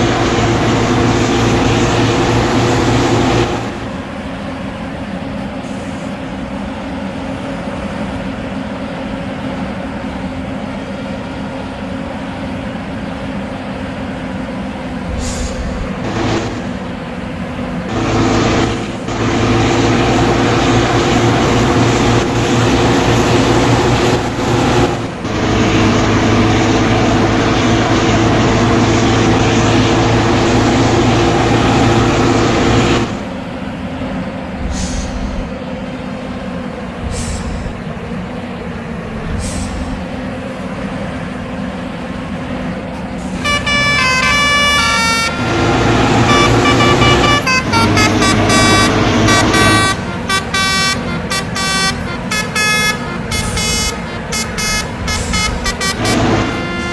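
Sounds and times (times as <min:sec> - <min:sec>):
musical multi-tone bus horn: 0:00.0 - 0:04.0, 0:17.8 - 0:33.3, 0:43.2 - 0:56.9
bus diesel engine running: 0:00.0 - 0:56.9
short air hisses: 0:15.1 - 0:16.0, 0:34.6 - 0:35.6, 0:37.0 - 0:37.8.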